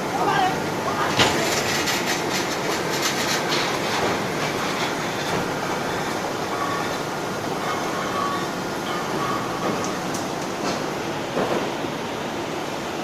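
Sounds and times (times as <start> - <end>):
industrial machinery roar: 0.0 - 13.0
rattling clanking strokes: 1.1 - 7.0.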